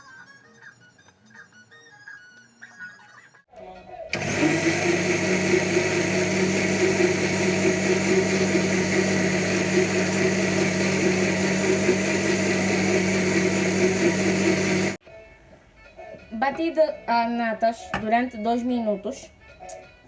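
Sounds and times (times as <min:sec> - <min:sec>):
blender motor whining: 0:04.1 - 0:15.0.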